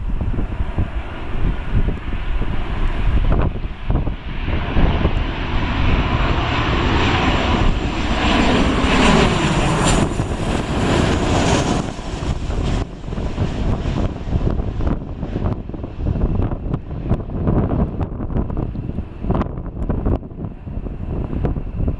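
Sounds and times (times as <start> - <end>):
jet engines passing close: 0.0 - 21.9
wind rumble on microphone: 0.0 - 21.9.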